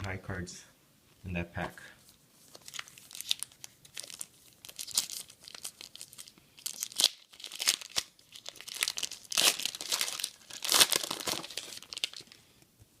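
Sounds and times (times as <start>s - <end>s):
wrapper tearing and crinkling: 2.5s - 12.4s.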